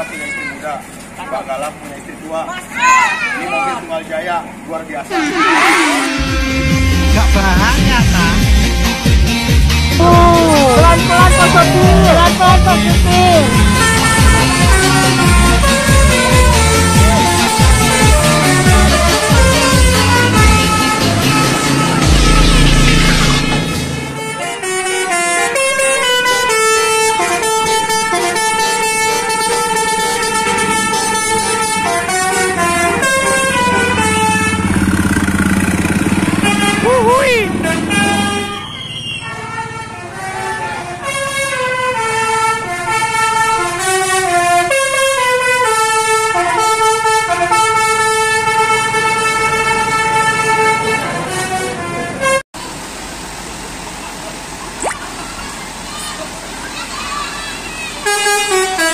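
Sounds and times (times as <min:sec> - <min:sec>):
multi-tone air horn tune: 0:05.1 - 0:08.7, 0:09.9 - 0:35.2, 0:36.3 - 0:52.4, 0:58.0 - 0:58.9.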